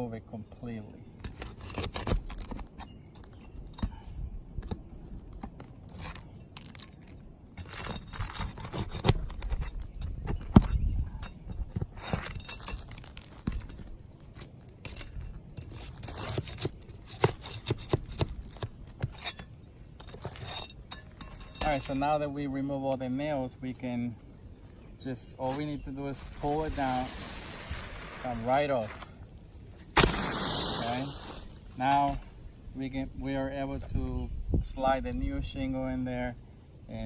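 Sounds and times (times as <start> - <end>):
pry bar scraping shingles: 1.2 - 22.0.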